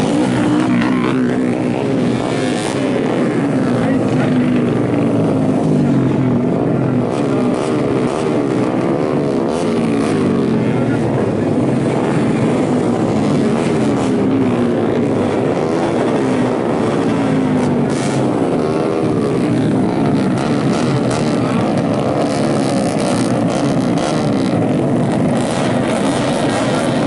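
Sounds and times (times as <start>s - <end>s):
racing motorcycles at high revs: 0.0s - 27.0s.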